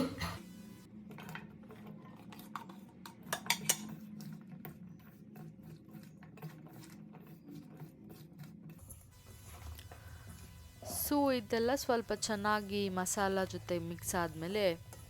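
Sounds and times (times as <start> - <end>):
utensil clinking and scraping: 1.2 - 10.0
potatoes mixed in spice paste: 1.6 - 15.0.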